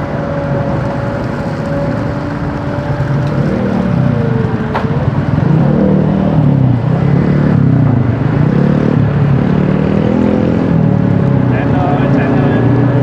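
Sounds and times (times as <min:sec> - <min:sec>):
excavator diesel engine running: 0:00.0 - 0:08.7.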